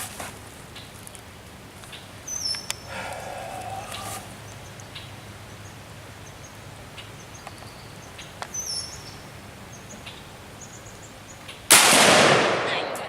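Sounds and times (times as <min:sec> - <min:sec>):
faint bird chirps: 0:01.9 - 0:11.6
rifle shot with echo: 0:11.7 - 0:13.0.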